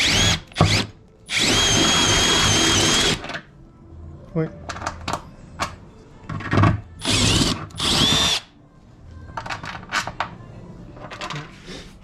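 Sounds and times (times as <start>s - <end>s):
power drill whining into sheet metal: 0.0s - 3.2s.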